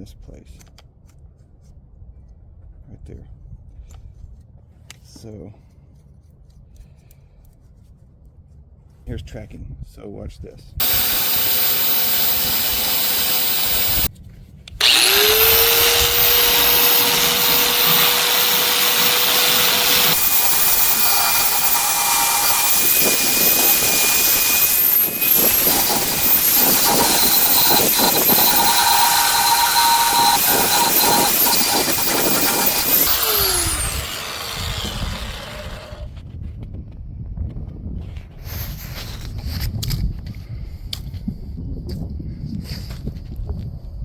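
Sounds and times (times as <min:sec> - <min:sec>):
belt sander whining: 0:10.8 - 0:14.1, 0:14.8 - 0:36.1
sander rasping against wood: 0:10.8 - 0:14.1, 0:14.8 - 0:36.0.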